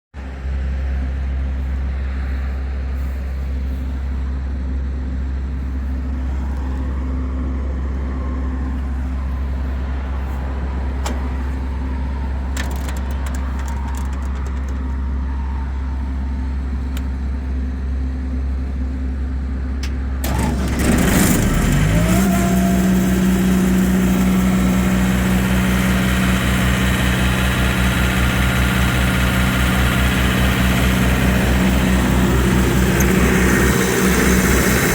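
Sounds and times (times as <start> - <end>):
diesel air compressor running: 8.6 - 34.9.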